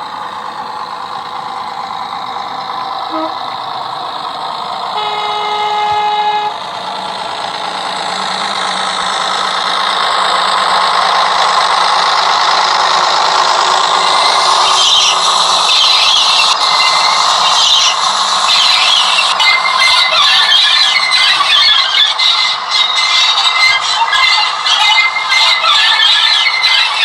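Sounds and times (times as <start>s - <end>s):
model diesel engine sound: 0.0s - 27.0s
high squealing: 0.8s - 26.7s
model train horn toot: 3.1s - 3.6s, 4.9s - 6.6s.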